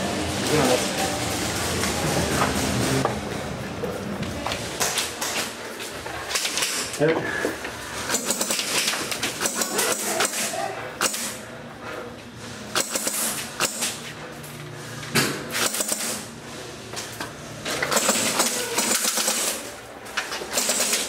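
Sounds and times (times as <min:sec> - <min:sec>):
airsoft guns firing in bursts: 0:08.1 - 0:11.4, 0:12.7 - 0:13.9, 0:15.5 - 0:16.2, 0:17.9 - 0:19.7, 0:20.5 - 0:21.0.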